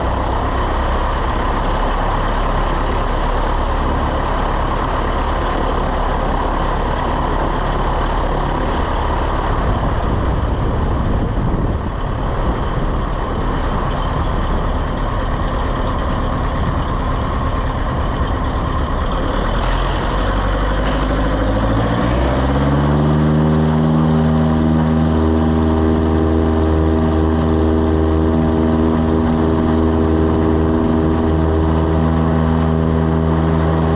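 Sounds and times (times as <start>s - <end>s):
airplane engine and propeller: 0.0s - 33.9s
heavy rushing rumble: 0.0s - 33.9s.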